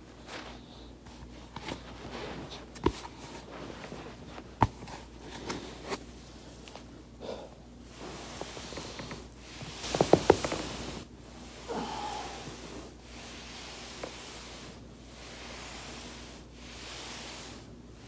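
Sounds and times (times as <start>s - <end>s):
body rustling on foam roller: 0.0s - 6.9s, 7.9s - 18.0s.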